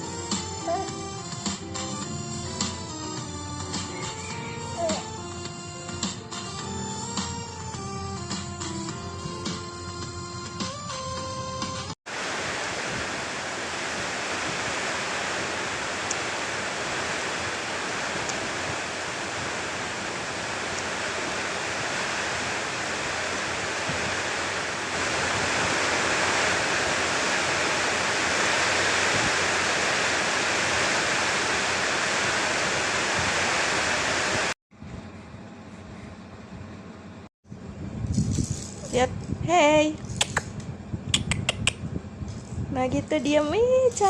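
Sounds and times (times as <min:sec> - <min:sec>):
steady rushing noise: 0:12.1 - 0:34.6.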